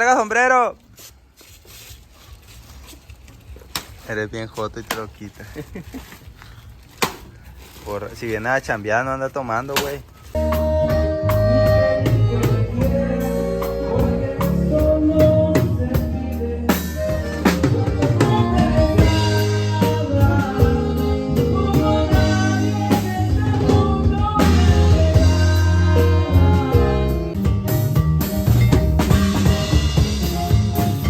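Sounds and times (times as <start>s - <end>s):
person singing: 10.4s - 27.4s
band playing melody: 10.4s - 31.0s
drum kit beat: 10.4s - 31.0s.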